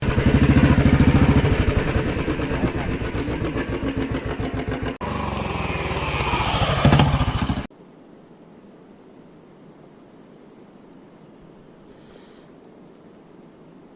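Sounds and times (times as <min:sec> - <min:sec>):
engine running with even pulse: 0:00.0 - 0:07.7.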